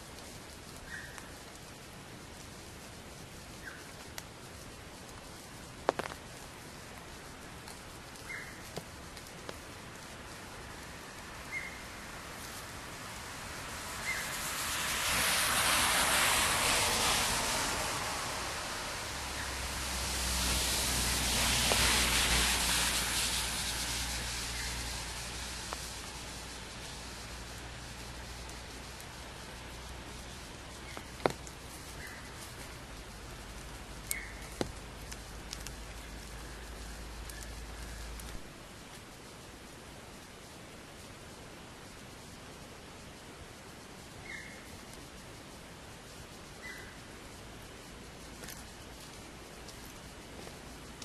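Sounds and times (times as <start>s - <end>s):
drizzle hissing in forest: 0.0s - 51.0s
sharp drip-like knocks: 30.8s - 32.7s, 34.0s - 36.3s.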